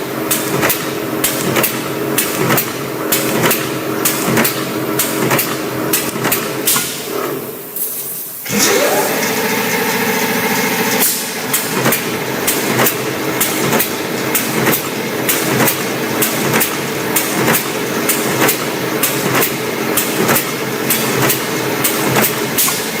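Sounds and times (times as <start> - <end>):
continuous mechanical noise: 0.0 - 23.0
sharp machine clacks: 0.2 - 7.0, 9.8 - 23.0
machine motor whine: 8.4 - 19.4.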